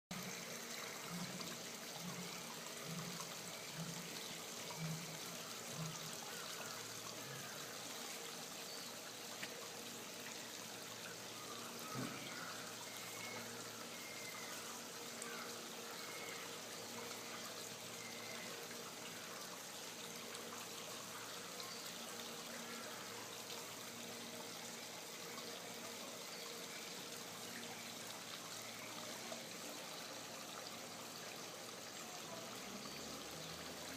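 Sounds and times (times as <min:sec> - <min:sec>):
running water: 0:00.1 - 0:33.9.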